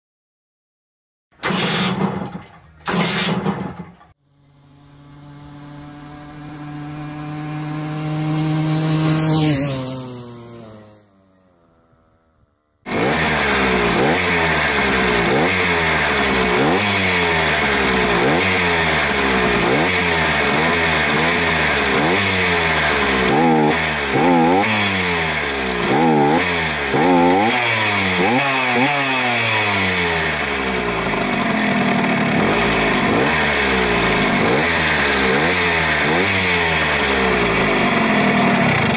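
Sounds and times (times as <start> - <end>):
moped engine revving: 1.4 - 38.9
rising tone: 4.2 - 12.6
high engine whine: 4.2 - 38.9.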